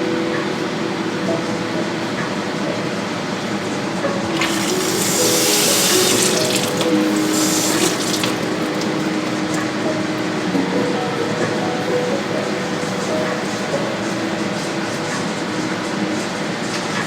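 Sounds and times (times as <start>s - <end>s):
water running from a tap: 4.3s - 9.4s.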